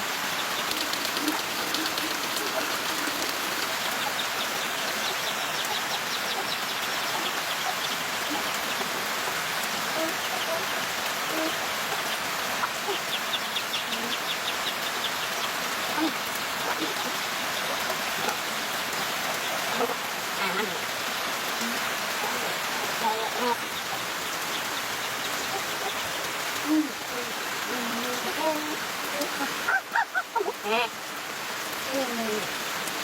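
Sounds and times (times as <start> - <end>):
steady rain falling: 0.0 - 33.0
high ticking chirps: 0.3 - 5.3.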